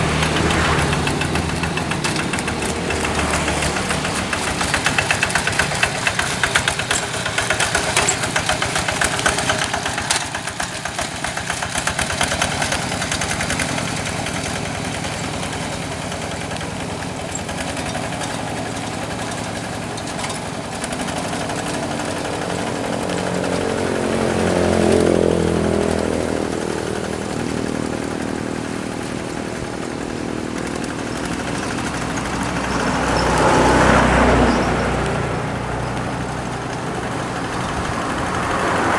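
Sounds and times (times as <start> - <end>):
diesel engine knocking: 0.0 - 38.9.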